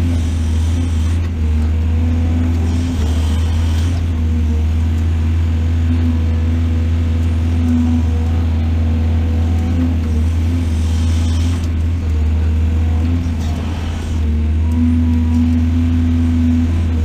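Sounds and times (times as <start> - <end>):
diesel engine droning: 0.0 - 17.0.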